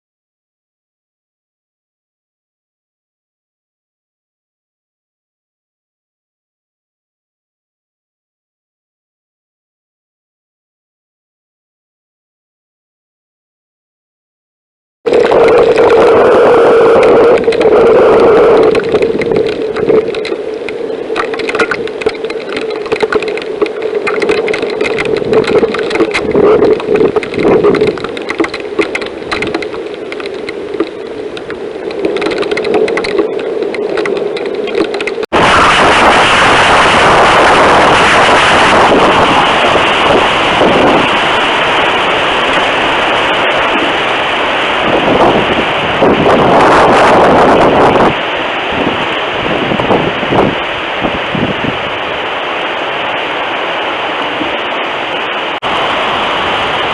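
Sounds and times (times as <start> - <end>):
whistling tone with crackling: 15.1 - 39.0
wind buffeting microphone: 15.1 - 56.9.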